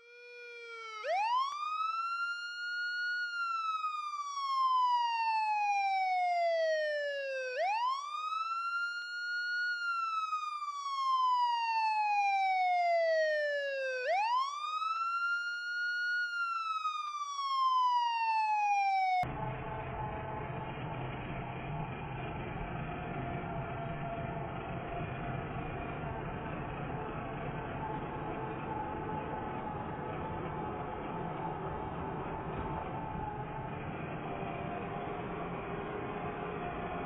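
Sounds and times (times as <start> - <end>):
emergency siren wailing: 0.0 - 37.0.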